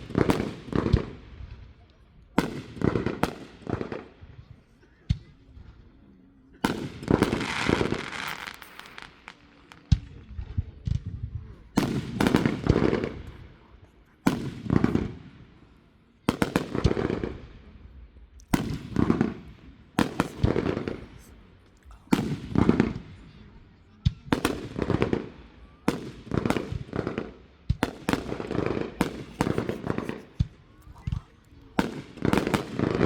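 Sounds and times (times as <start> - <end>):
fireworks bangs: 0.0 - 1.6, 2.4 - 4.2, 6.6 - 13.6, 14.2 - 15.5, 16.2 - 17.5, 18.5 - 21.5, 22.1 - 23.4, 24.3 - 33.0
fireworks popping and crackling: 0.0 - 1.6, 2.4 - 4.2, 6.6 - 15.5, 16.3 - 17.6, 18.4 - 23.4, 24.0 - 33.0.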